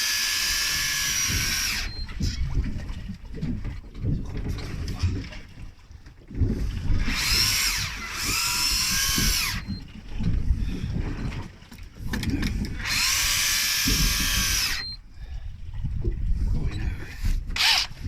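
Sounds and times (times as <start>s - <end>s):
electric fishing reel motor whine: 0.0s - 2.4s, 7.0s - 9.8s, 12.8s - 15.0s, 17.6s - 18.0s.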